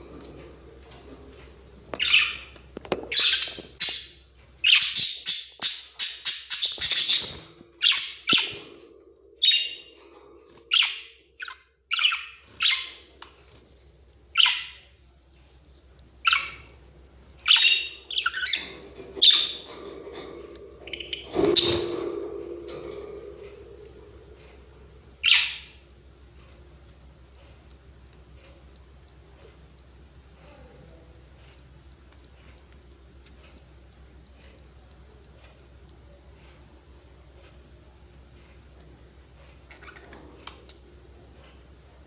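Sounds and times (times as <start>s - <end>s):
parrots chirping and calling: 0.0s - 13.3s, 14.3s - 14.8s, 16.2s - 24.4s, 25.2s - 25.8s, 39.6s - 40.6s.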